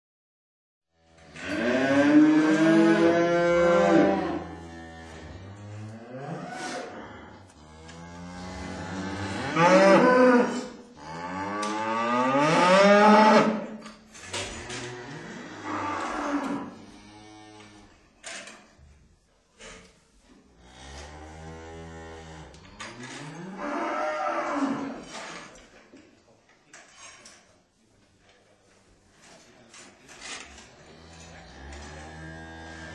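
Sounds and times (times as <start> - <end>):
cows mooing: 1.3 - 13.7, 14.4 - 17.8, 20.6 - 25.1, 30.8 - 32.9.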